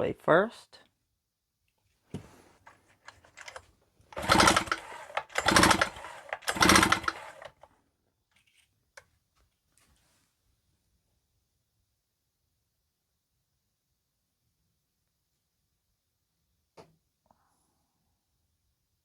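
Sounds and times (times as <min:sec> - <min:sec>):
power driver running: 0:03.4 - 0:07.7.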